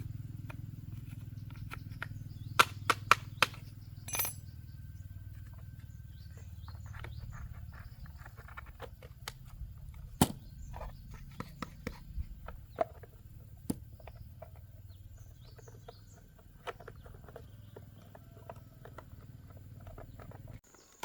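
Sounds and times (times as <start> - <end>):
short ringing clink: 4.0 - 4.5.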